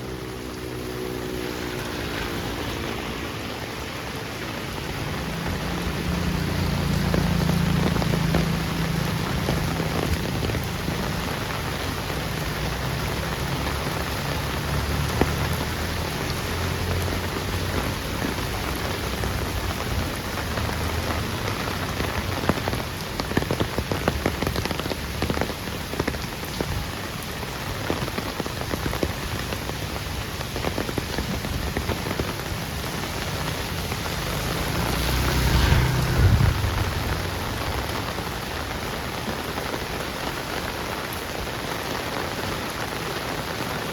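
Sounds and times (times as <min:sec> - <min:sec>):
heavy rain on a street: 0:00.0 - 0:43.9
rushing swell: 0:34.2 - 0:38.3
low rumble: 0:34.6 - 0:38.6.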